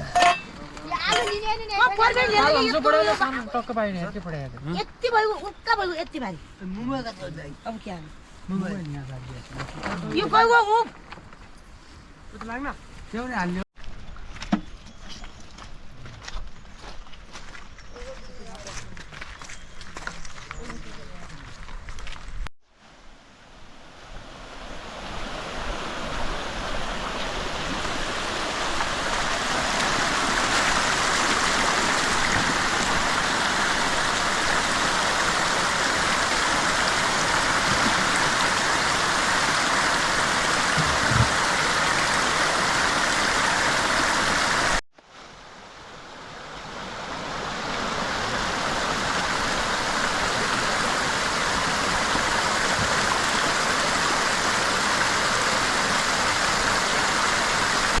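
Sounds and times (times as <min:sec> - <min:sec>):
water rushing: 0:22.7 - 0:58.0.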